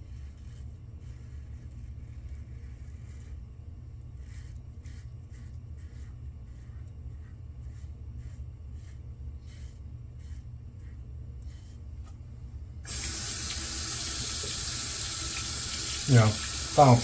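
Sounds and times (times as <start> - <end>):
razor scraping through lather: 12.9 - 17.0
water running into sink: 12.9 - 17.0.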